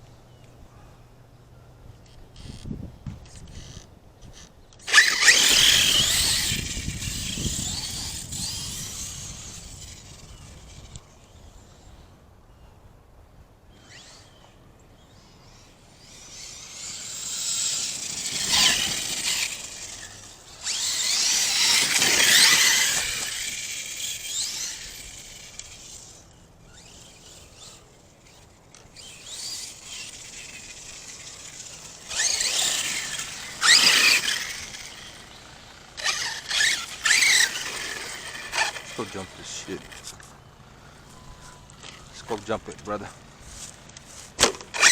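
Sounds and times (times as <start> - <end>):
electric motor whining: 2.1 - 12.0, 15.2 - 44.9.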